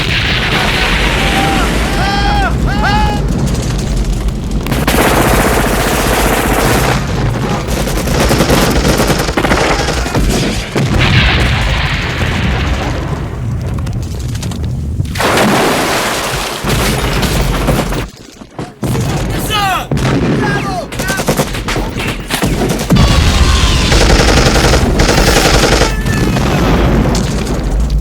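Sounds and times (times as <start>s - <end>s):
voices: 0.9s - 3.3s, 18.6s - 21.3s
machine-gun bursts: 4.7s - 10.4s, 20.9s - 26.1s.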